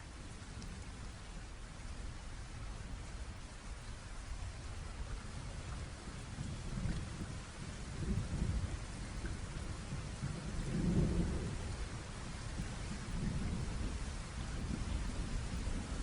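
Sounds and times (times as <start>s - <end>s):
steady rain: 0.0s - 16.0s.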